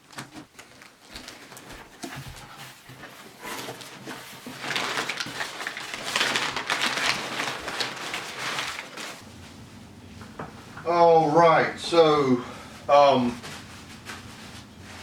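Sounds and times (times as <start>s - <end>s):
packaging clicks and rustles: 0.0s - 9.2s
wrapping crinkling: 0.1s - 9.2s.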